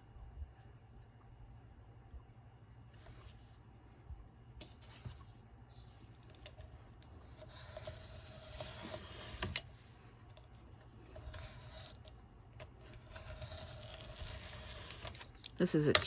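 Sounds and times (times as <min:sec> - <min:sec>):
knife scraping through paper: 0:07.3 - 0:09.6, 0:11.1 - 0:12.1, 0:12.8 - 0:16.0.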